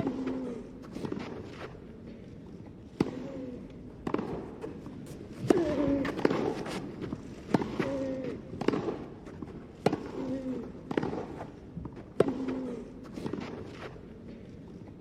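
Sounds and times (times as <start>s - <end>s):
tennis ball hit by rackets: 4.0s - 14.0s.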